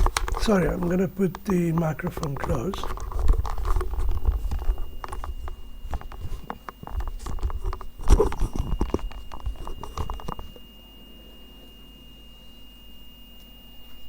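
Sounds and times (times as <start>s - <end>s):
microphone handling noise: 0.0s - 10.6s.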